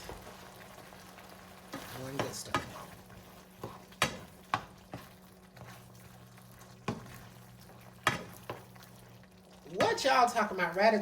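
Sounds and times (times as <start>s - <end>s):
spoon stirring sauce: 0.1s - 10.4s
spoon knocking against pan: 3.6s - 5.0s, 8.0s - 8.6s.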